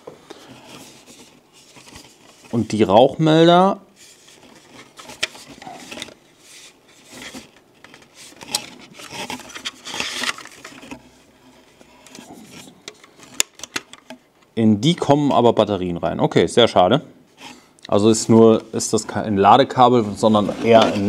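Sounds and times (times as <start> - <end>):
packaging rustling: 0.3 - 2.9, 4.0 - 14.1.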